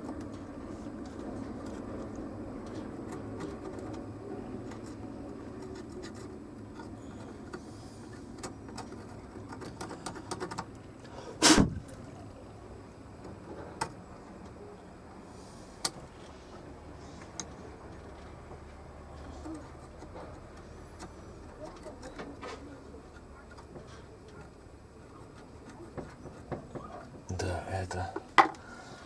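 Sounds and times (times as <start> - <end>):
loud sharp knock: 11.4 - 11.8.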